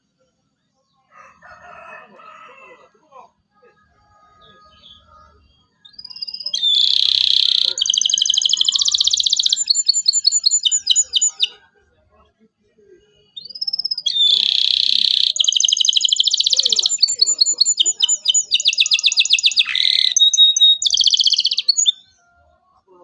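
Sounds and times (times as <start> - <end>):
canary singing: 4.1 - 11.6, 13.3 - 22.6.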